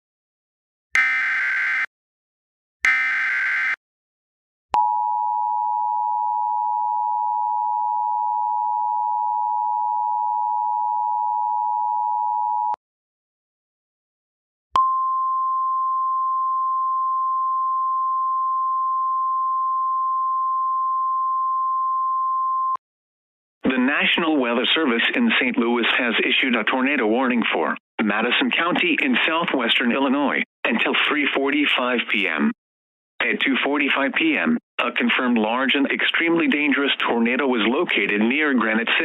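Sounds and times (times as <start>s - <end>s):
steady warning alarm tone: 1.0s - 1.9s, 2.8s - 3.8s
two-tone alert signal: 2.9s - 3.8s.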